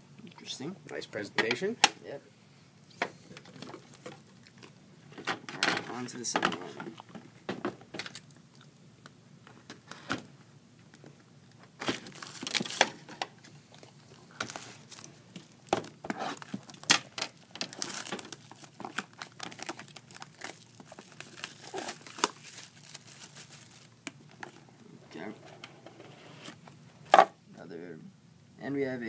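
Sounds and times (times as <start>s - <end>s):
plastic wrapping tearing and crinkling: 11.8s - 13.3s, 14.0s - 24.6s.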